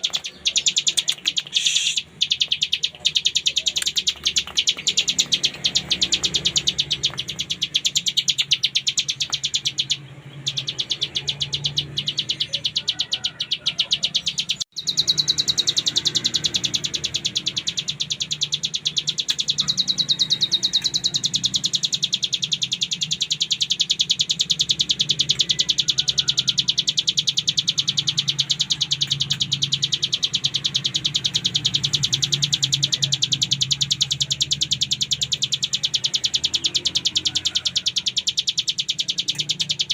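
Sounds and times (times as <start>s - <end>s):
bird buzzing trill: 1.4s - 2.5s.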